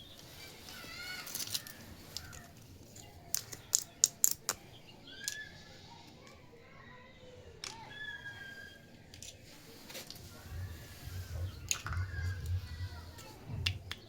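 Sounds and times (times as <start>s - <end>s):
faint chirping calls: 0.0s - 14.0s
plastic toy pieces clicking: 0.2s - 5.6s, 7.6s - 7.9s, 9.1s - 9.4s.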